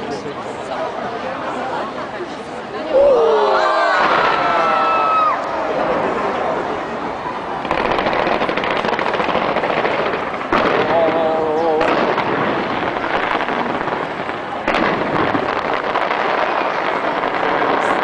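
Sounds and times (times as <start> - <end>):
loud firework bursts: 5.8 - 18.0
fireworks crackling and popping: 7.4 - 18.0.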